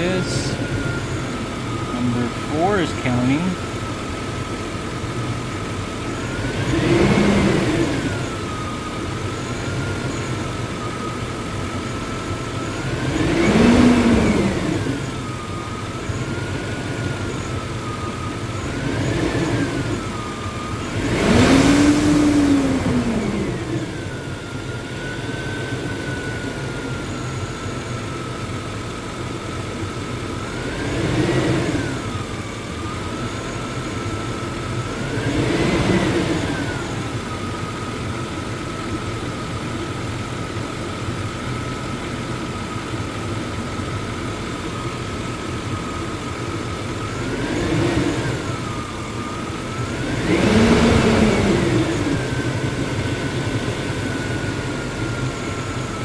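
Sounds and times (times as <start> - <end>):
truck engine revving: 0.0 - 15.4, 16.0 - 27.3, 30.4 - 38.4, 45.8 - 56.0
engine whine: 0.0 - 56.0.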